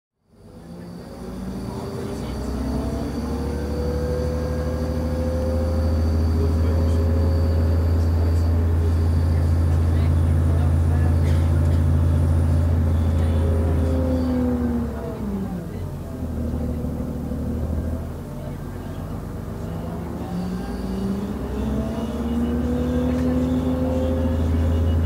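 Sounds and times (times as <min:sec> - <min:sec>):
railcar diesel engine drone: 0:00.2 - 0:25.0
faint high whine: 0:00.3 - 0:14.6.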